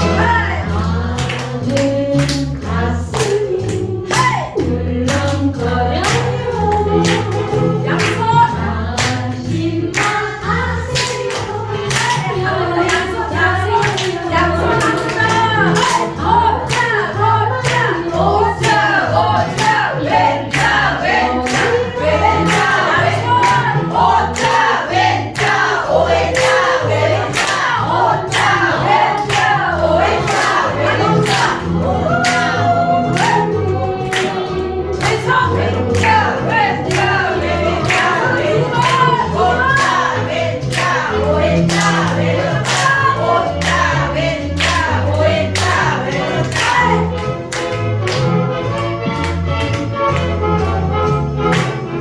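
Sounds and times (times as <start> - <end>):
song with backing music: 0.0 - 52.0
body-percussion claps and slaps: 1.1 - 2.5, 3.1 - 8.3, 10.9 - 13.1, 25.4 - 28.6, 29.2 - 29.6, 38.8 - 44.0, 44.6 - 45.0, 45.6 - 48.4, 51.5 - 51.8.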